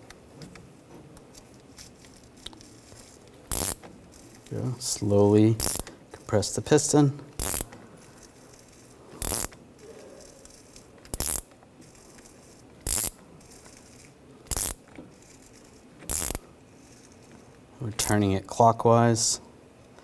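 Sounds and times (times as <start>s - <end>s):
ratchet clicking: 2.1s - 9.6s, 10.3s - 18.2s.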